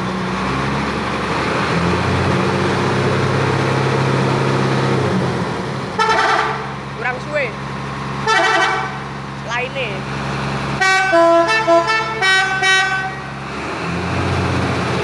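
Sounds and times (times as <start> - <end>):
bus engine running: 0.0 - 15.0
multi-tone bus horn: 5.9 - 6.8, 8.2 - 9.1, 10.8 - 13.4.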